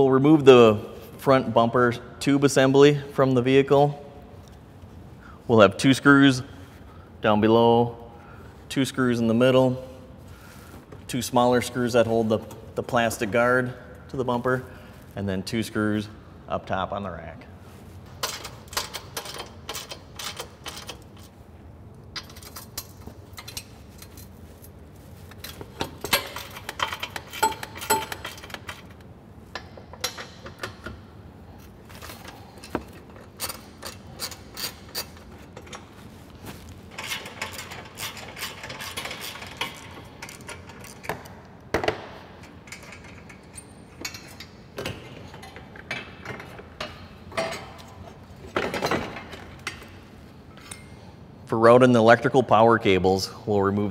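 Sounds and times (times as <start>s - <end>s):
metal parts clinking: 25.3s - 29.0s.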